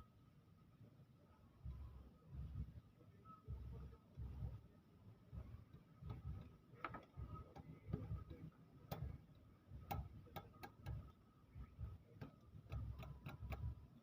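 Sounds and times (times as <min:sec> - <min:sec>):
faint metallic clicks and taps: 0:05.4 - 0:13.9.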